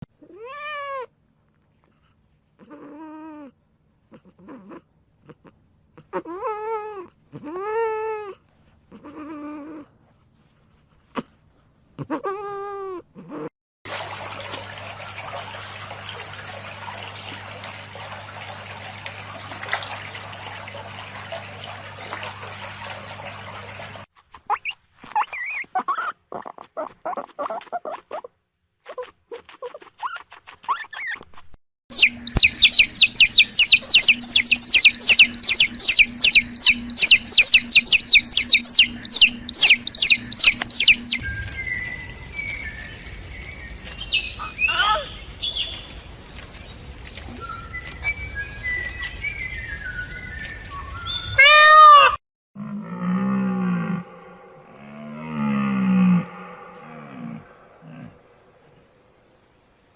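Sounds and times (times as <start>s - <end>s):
cat meowing: 0.2s - 1.1s
quick chirping calls: 31.9s - 46.0s.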